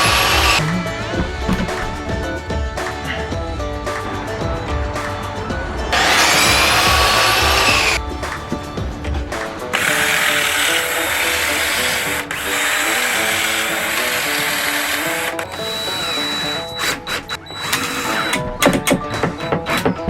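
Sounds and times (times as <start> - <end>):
power drill driving screws: 0.0 - 0.6, 6.0 - 8.0, 9.8 - 18.5
background music: 0.0 - 20.0.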